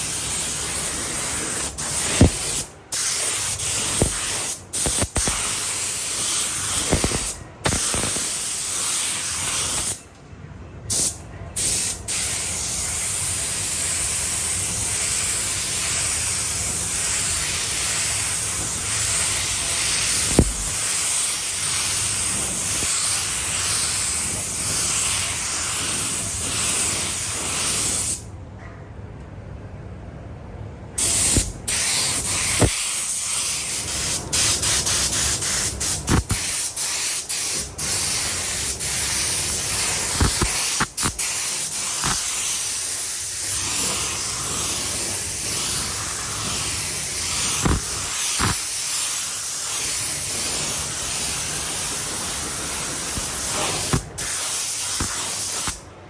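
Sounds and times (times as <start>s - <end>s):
paint spray gun hissing: 0.0s - 10.0s, 15.0s - 28.2s, 31.0s - 55.8s
spray gun trigger releases: 6.6s - 8.4s, 39.9s - 42.7s, 47.5s - 49.0s, 53.1s - 55.8s.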